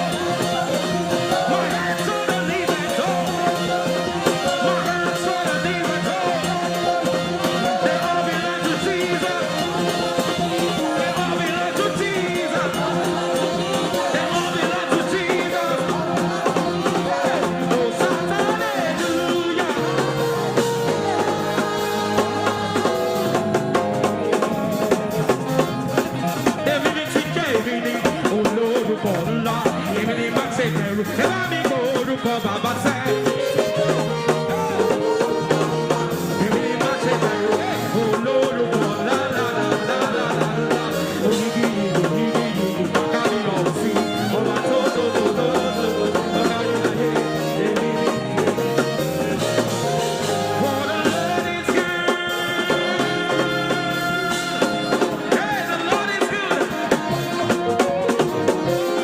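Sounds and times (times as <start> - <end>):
drum kit beat: 0.0 - 59.0
gospel band music: 0.0 - 59.0
stepping bass line: 0.0 - 59.0.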